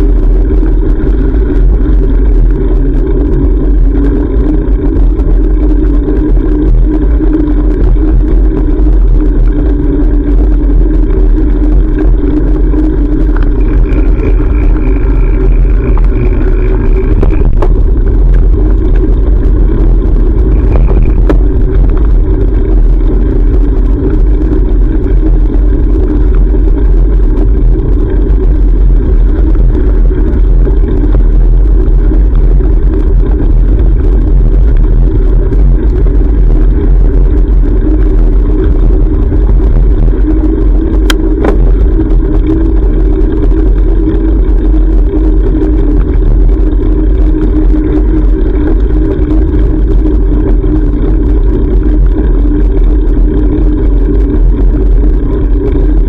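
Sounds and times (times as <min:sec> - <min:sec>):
wind noise: 0:00.0 - 0:56.0.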